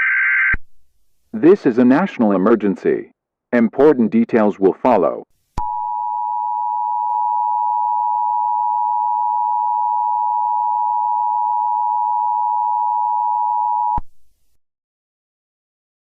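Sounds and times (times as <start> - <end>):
steady two-tone electronic beep: 5.6 - 14.0.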